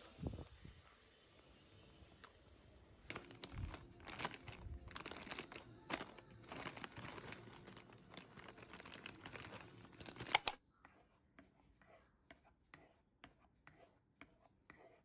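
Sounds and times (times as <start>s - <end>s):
packaging crinkling: 3.0s - 10.6s.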